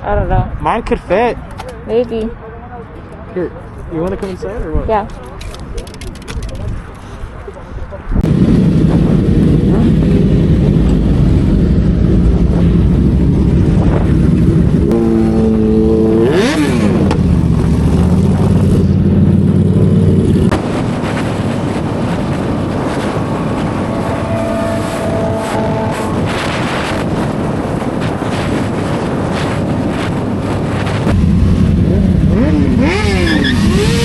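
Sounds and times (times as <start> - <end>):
car engine and road rumble: 0.0 - 34.0
engine revving: 8.2 - 20.7, 31.0 - 34.0.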